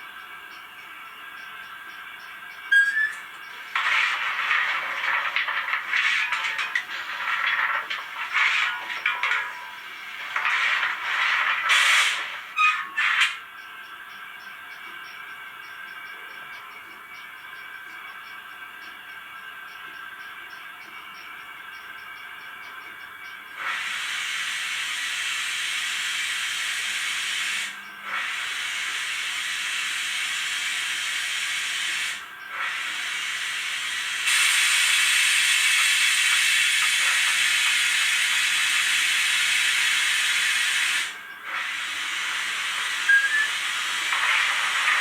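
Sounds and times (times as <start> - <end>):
model locomotive steam hiss: 9.9 - 13.4, 23.6 - 45.0.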